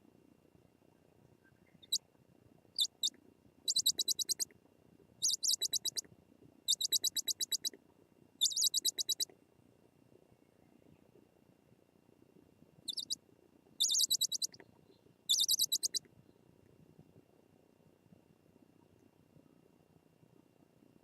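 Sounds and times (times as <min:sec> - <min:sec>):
owls rapid chittering: 0:02.8 - 0:03.1, 0:03.7 - 0:04.4, 0:05.2 - 0:06.0, 0:06.7 - 0:07.7, 0:08.4 - 0:09.2, 0:12.9 - 0:13.2, 0:13.8 - 0:14.6, 0:15.3 - 0:16.0
owls giving high-pitched calls: 0:02.8 - 0:04.4, 0:05.2 - 0:06.0, 0:06.7 - 0:07.7, 0:08.4 - 0:09.3, 0:12.9 - 0:13.2, 0:13.8 - 0:14.6, 0:15.3 - 0:16.0.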